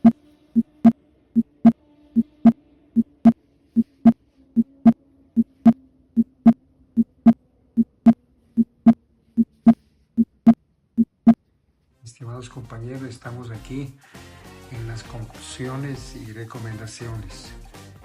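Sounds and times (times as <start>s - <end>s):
heartbeat lub-dub: 3.1s - 11.3s.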